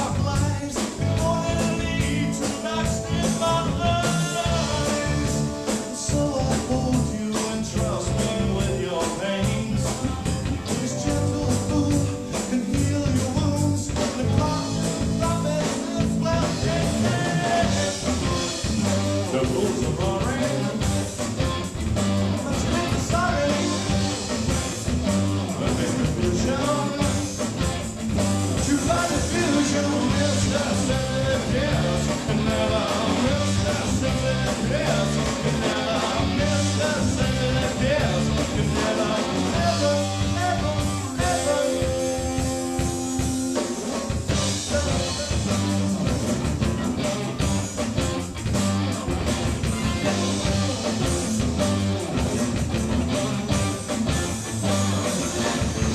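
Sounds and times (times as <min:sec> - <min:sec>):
person singing: 0:00.0 - 0:21.0, 0:22.4 - 0:24.4, 0:25.5 - 0:27.5, 0:28.6 - 0:45.9, 0:46.6 - 0:47.6
rock band playing: 0:00.0 - 0:55.9.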